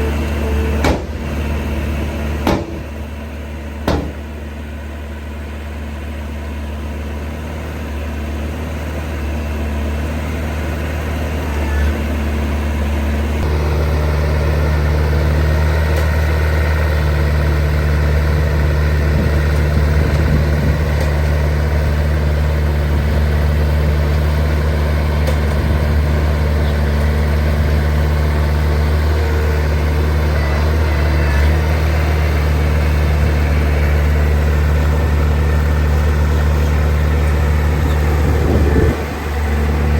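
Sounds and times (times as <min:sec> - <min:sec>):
second engine note: 0:00.0 - 0:04.4
diesel engine running: 0:00.0 - 0:39.9.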